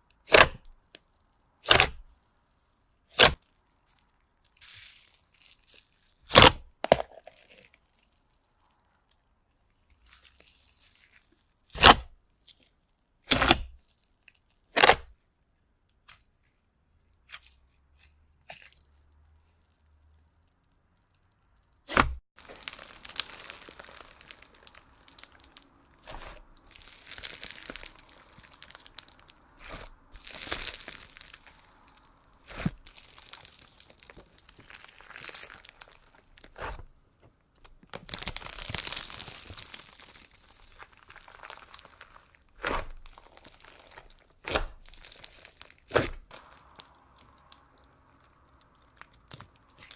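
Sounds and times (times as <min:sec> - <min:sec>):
slime crackling and crunching: 0:00.0 - 0:15.2, 0:17.2 - 0:49.9
slime snapping: 0:37.9 - 0:47.8.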